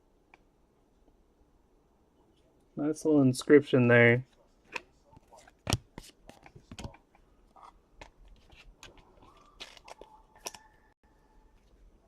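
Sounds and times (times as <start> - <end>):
cards and packaging handled: 4.6 - 10.8.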